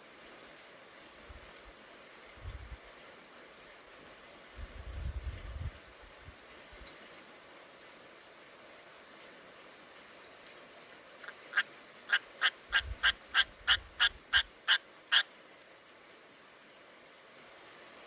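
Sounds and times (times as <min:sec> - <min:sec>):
rain hiss: 0:00.0 - 0:18.0
animal sharp calls: 0:11.2 - 0:15.3.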